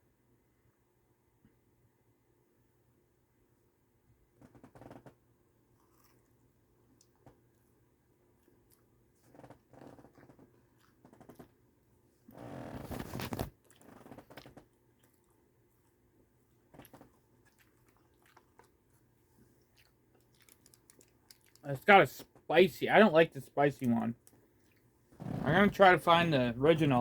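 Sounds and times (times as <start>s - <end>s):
person chewing crunchy food: 5.8s - 6.5s, 16.6s - 21.6s
mouth sounds: 25.2s - 27.0s.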